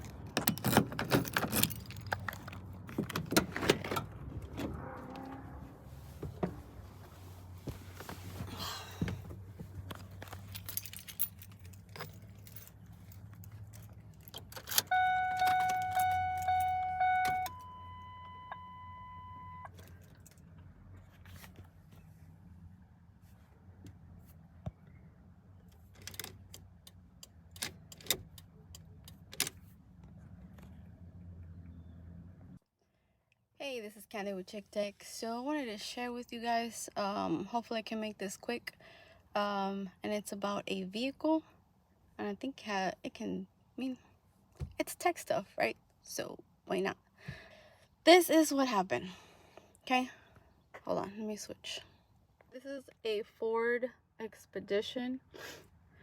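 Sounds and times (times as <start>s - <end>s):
keys jangling and clicking: 0.0s - 3.5s, 10.2s - 17.5s
car electronic warning chime: 14.8s - 19.8s.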